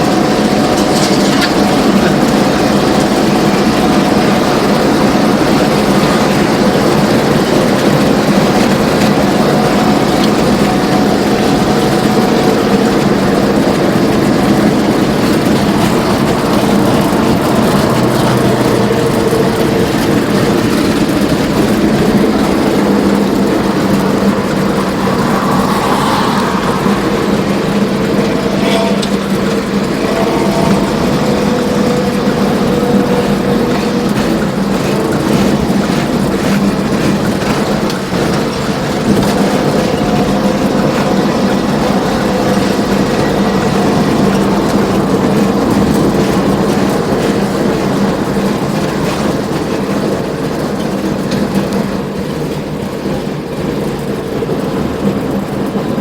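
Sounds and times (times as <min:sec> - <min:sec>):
bus engine droning: 0:00.0 - 0:56.0.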